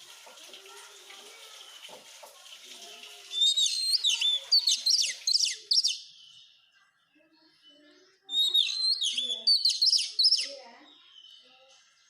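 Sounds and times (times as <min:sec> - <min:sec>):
bird singing whistled notes: 0:03.3 - 0:06.5, 0:08.3 - 0:11.5.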